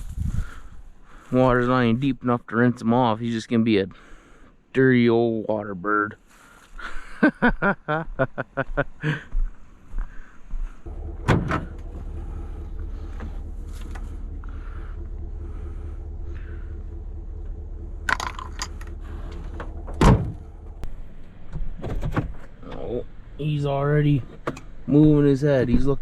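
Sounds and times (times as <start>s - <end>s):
vehicle engine running: 10.5s - 26.0s
heavy door thuds: 10.9s - 16.7s, 19.1s - 20.8s.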